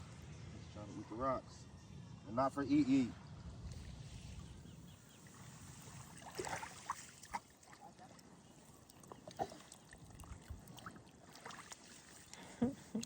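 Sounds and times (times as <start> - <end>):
shallow seawater sloshing: 5.2 - 12.9
small splashes: 5.2 - 13.0.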